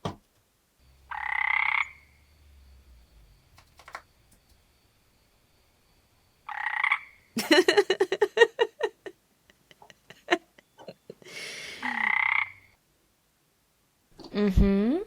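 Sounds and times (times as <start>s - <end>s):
croaking rattle: 1.0s - 4.2s, 6.4s - 7.4s, 11.8s - 12.7s
clicks: 3.6s - 4.6s.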